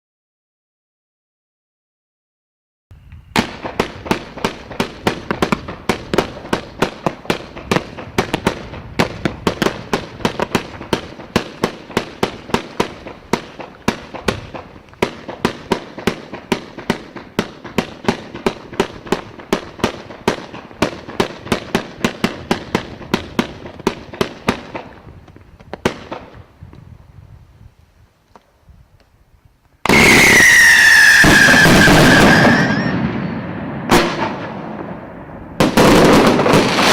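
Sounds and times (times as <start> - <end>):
firework cake shots: 3.4 - 26.4
descending firework whistle: 29.8 - 34.6.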